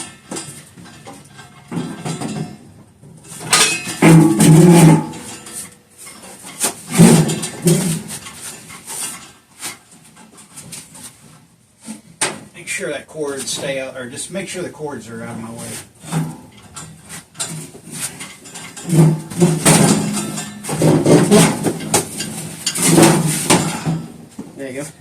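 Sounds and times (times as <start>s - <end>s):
metal clanking and knocking: 0.0s - 9.3s, 16.0s - 24.6s.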